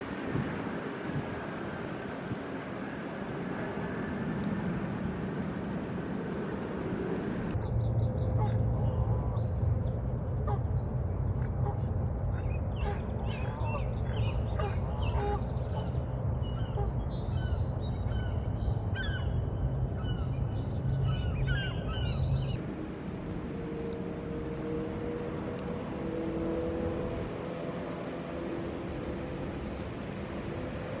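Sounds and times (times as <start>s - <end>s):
low rumble of wind or water: 0.0s - 31.0s
wild birds calling: 10.4s - 22.6s.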